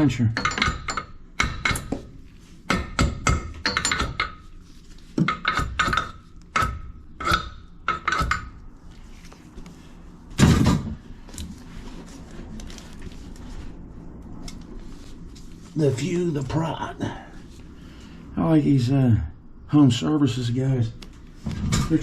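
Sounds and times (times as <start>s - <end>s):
sharp metallic knocks: 0.3s - 4.5s, 5.2s - 8.6s.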